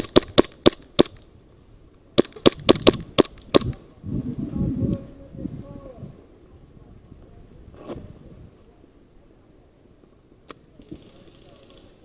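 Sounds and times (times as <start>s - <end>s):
airsoft gun shots: 0.0s - 1.2s, 2.2s - 3.8s.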